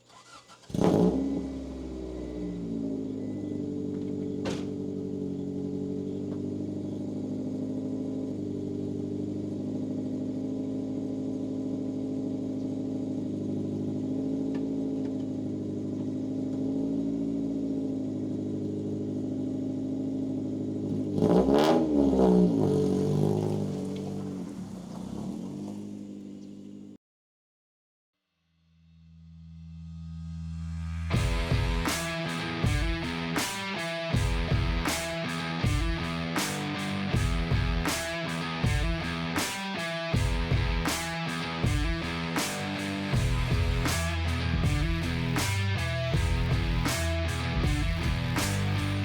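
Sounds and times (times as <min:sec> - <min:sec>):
car engine starting and idling: 0:00.0 - 0:27.0, 0:30.7 - 0:49.0
engine revving: 0:00.0 - 0:27.0, 0:29.4 - 0:49.0.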